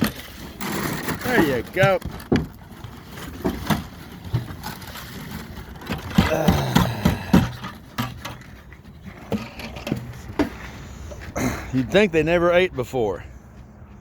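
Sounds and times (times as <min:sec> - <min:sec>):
cows crunching dry cereal: 0:00.0 - 0:07.6.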